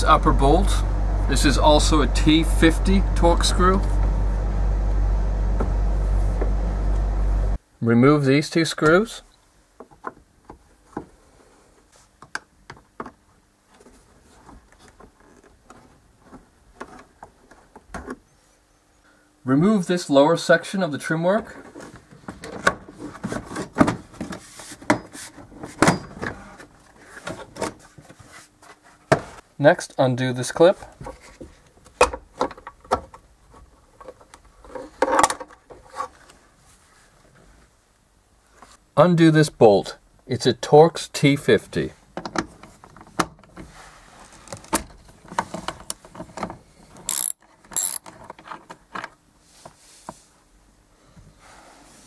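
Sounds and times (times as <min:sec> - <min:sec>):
rubbing and rustling: 0:21.5 - 0:25.8, 0:26.4 - 0:29.5
ratchet wrench clicking: 0:47.1 - 0:48.0.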